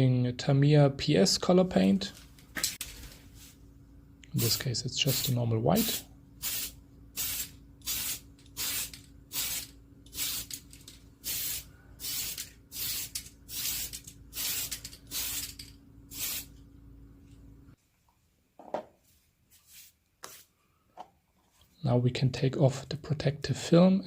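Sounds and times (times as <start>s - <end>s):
steady low hum: 0.0s - 17.8s
spray paint hissing bursts: 4.4s - 16.5s.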